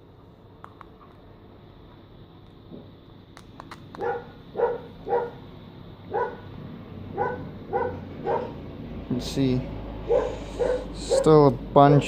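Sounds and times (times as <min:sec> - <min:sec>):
sharp clicks: 0:03.3 - 0:04.1
dog barking: 0:04.0 - 0:05.4, 0:06.1 - 0:06.5, 0:07.1 - 0:08.6, 0:10.1 - 0:11.4.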